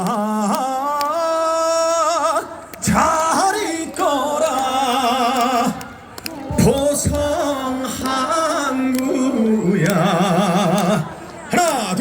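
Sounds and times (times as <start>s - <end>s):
man singing with vibrato: 0.0s - 12.0s.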